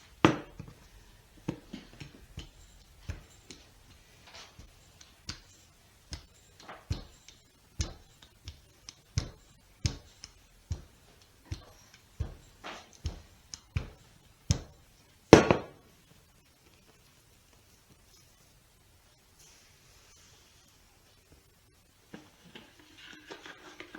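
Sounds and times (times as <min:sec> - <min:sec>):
rolling pin knocking on counter: 0:00.2 - 0:00.8, 0:01.4 - 0:05.5, 0:06.1 - 0:14.8, 0:15.4 - 0:15.8.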